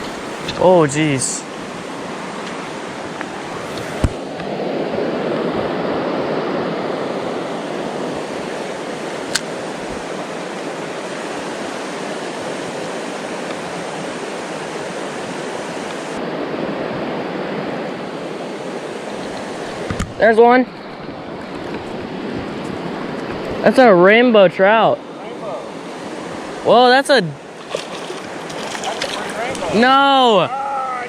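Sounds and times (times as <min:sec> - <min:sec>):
creek water rushing over rocks: 0:00.0 - 0:05.4, 0:25.7 - 0:30.4.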